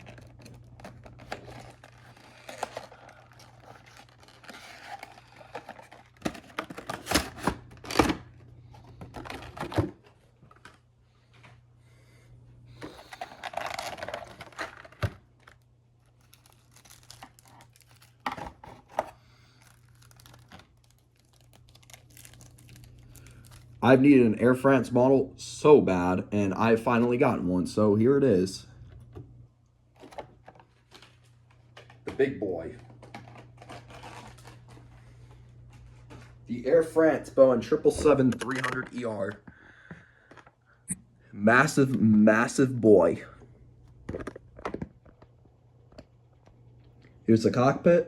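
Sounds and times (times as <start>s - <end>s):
cardboard packaging rustling: 0.0s - 10.8s, 12.8s - 23.8s, 33.0s - 35.0s.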